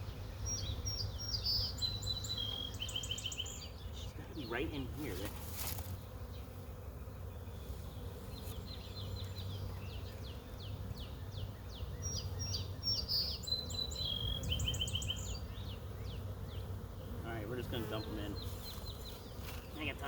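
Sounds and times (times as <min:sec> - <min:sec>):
bird chirping: 0:00.0 - 0:05.2, 0:07.2 - 0:20.0
bee swarm buzzing: 0:00.0 - 0:20.0.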